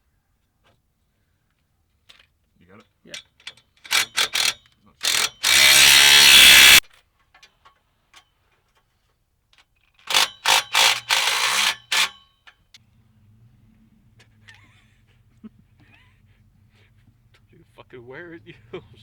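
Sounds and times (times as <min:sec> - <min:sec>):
power wrench buzzing: 0:03.9 - 0:06.8, 0:10.1 - 0:12.1.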